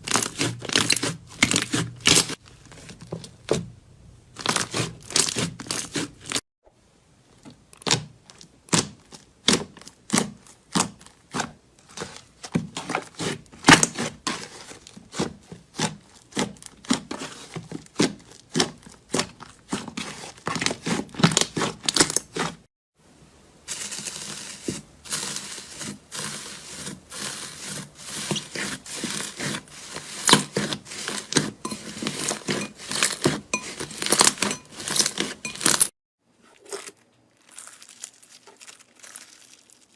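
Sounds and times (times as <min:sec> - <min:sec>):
slime squished by hand: 0:37.4 - 0:39.9.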